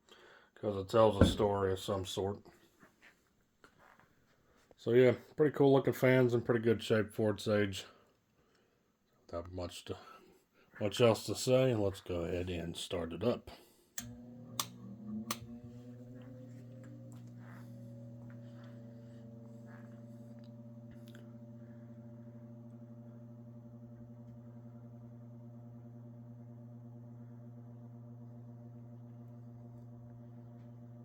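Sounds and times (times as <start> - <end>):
fan motor humming: 14.0 - 31.0.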